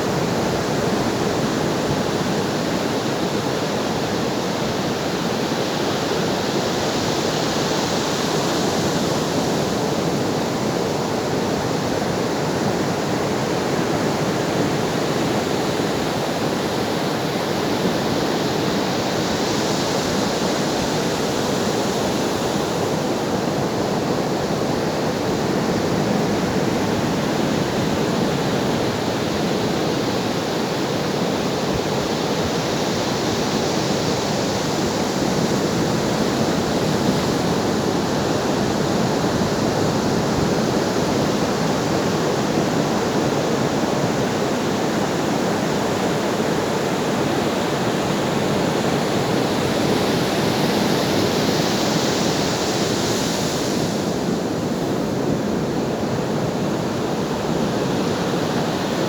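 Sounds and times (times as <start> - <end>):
ocean surf washing in: 14.4 - 59.0.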